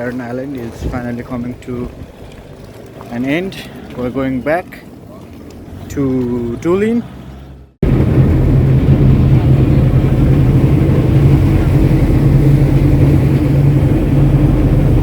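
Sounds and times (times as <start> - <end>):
engine droning: 0.0 - 15.0
rushing noise: 7.8 - 15.0.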